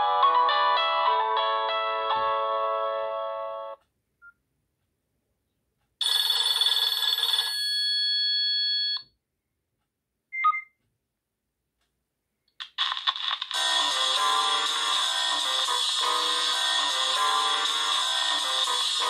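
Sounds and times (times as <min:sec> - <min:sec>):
phone ringtone telephone bell: 0:06.0 - 0:09.0
short beep: 0:10.4 - 0:10.8.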